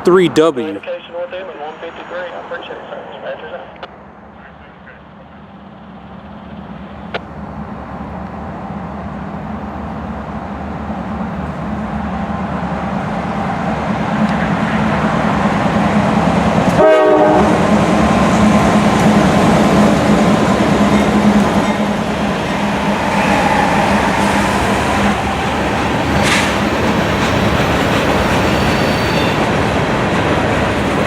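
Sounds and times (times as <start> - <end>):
diesel locomotive engines droning: 1.4 - 31.0
train horn note: 16.7 - 17.8, 22.1 - 29.5.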